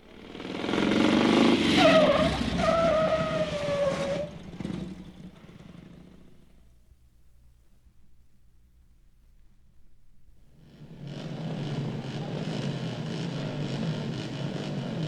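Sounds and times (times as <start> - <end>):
car engine and road noise: 0.0 - 6.6, 10.6 - 15.0
car tyres squealing: 0.1 - 6.2.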